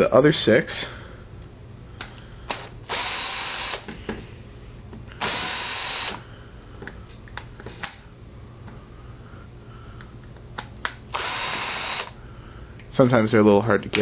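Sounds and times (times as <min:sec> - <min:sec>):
cordless drill spinning: 0:02.5 - 0:03.9, 0:05.2 - 0:06.3, 0:11.1 - 0:12.2.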